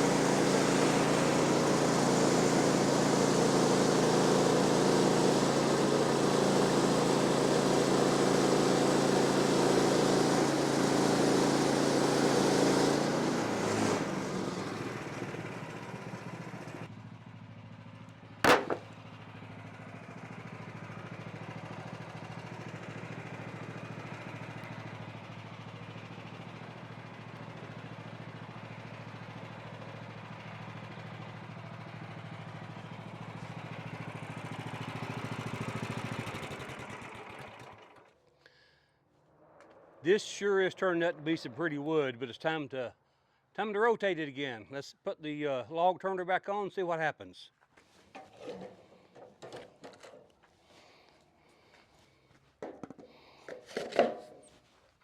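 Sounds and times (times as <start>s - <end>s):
band sawmill cutting log: 0.0s - 16.9s, 18.5s - 18.9s.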